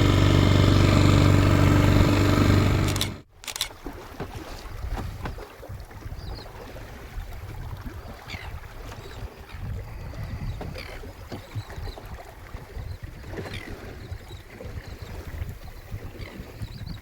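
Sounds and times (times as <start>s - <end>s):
water lapping against hull: 0.0s - 17.0s
wind rumble on microphone: 4.6s - 17.0s.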